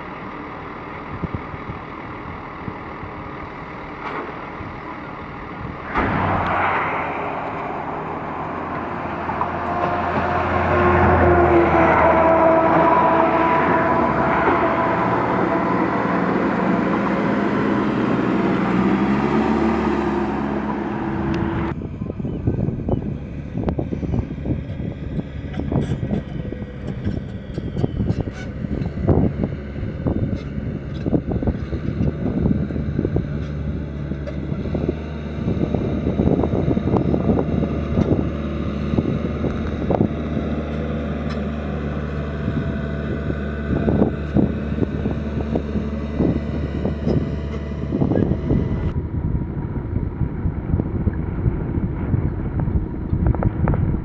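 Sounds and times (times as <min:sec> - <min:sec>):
diesel engine under load: 0:00.0 - 0:54.0
machine knocks and clanks: 0:05.8 - 0:10.6.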